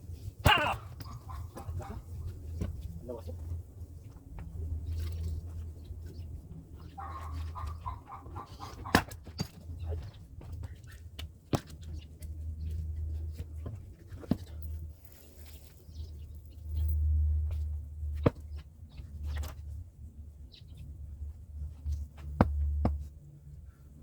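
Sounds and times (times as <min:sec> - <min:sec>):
axe striking firewood: 0:08.9 - 0:09.6.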